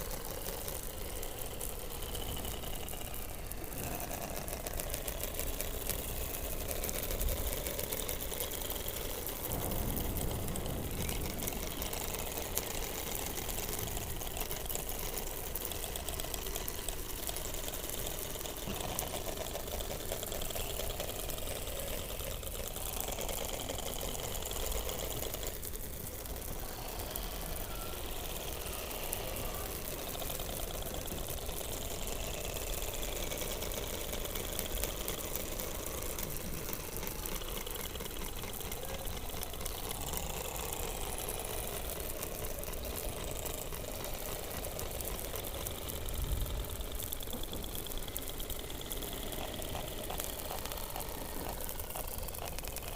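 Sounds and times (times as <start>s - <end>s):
dense underwater crackle: 0.0s - 52.9s
underwater whistles and sliding tones: 26.1s - 31.6s.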